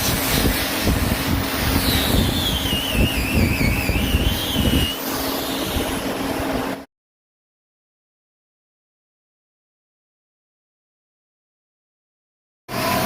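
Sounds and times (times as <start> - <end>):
high whine: 0.0 - 6.8.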